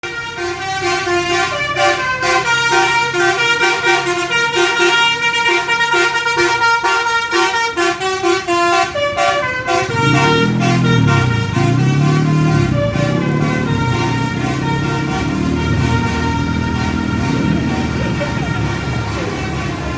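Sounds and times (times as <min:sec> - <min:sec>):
musical air horn melody: 0:00.0 - 0:19.9
low swooping horn tone: 0:08.2 - 0:19.9.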